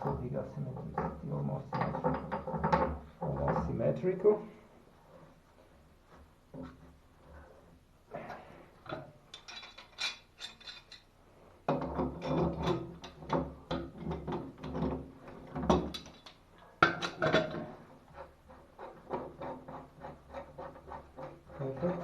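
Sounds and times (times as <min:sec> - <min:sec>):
metal clicking and scraping: 0:08.8 - 0:11.1.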